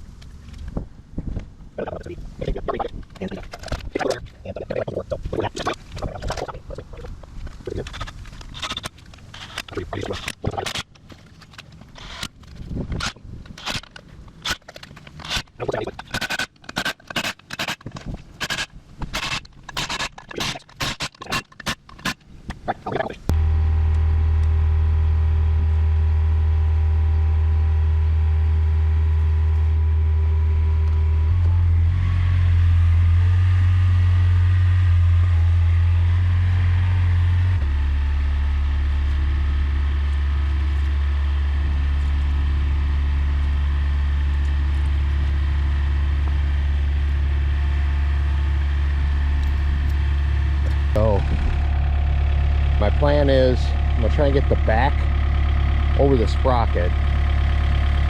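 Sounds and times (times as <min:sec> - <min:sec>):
sharp clicks and scrapes: 0:00.2 - 0:23.2
excavator diesel engine running: 0:01.7 - 0:12.3, 0:22.7 - 0:58.0.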